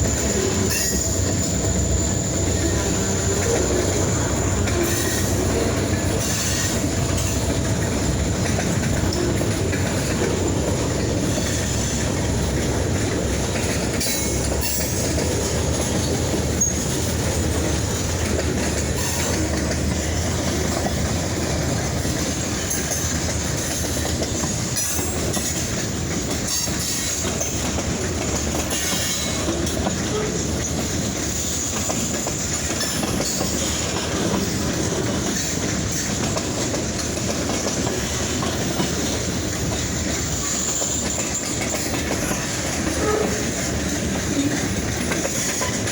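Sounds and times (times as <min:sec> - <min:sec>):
high wheel squeal: 0:00.0 - 0:07.5, 0:14.0 - 0:17.6
train wheels clicking on rails: 0:00.0 - 0:45.9.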